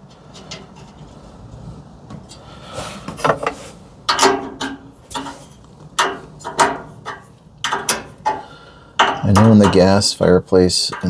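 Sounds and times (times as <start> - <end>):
metal tool clinking and scraping: 3.2 - 10.2, 10.8 - 11.0.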